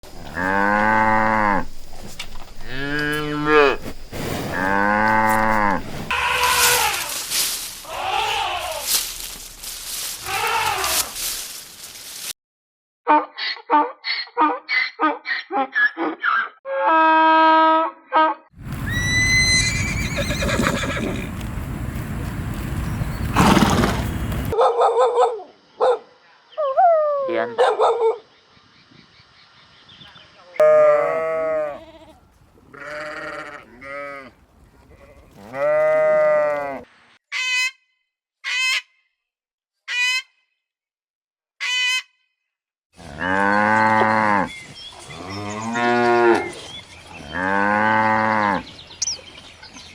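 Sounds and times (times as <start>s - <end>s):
cow mooing: 0.2s - 1.7s, 2.6s - 3.8s, 4.6s - 7.1s, 30.6s - 32.1s, 32.7s - 34.3s, 35.3s - 36.8s, 43.0s - 46.6s, 47.2s - 48.6s
horse whinnying: 4.6s - 7.0s, 18.8s - 21.4s, 23.3s - 24.4s.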